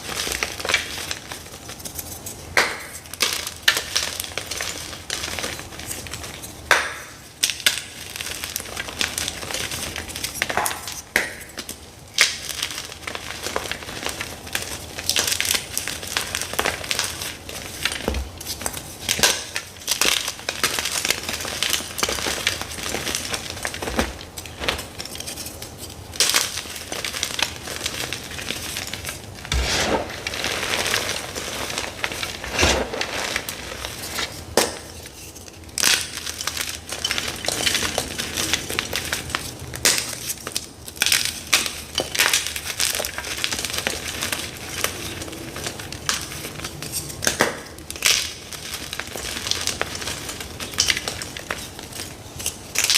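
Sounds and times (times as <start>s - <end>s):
chalk blocks crunching: 12.3s - 52.9s.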